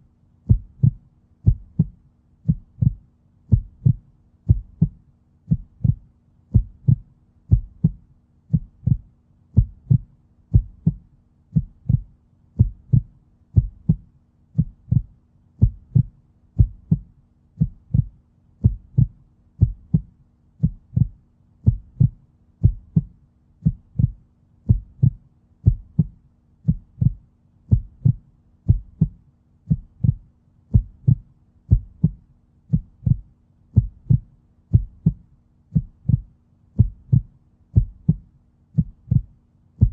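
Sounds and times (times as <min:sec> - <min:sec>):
human heartbeat: 0:00.4 - 0:39.9.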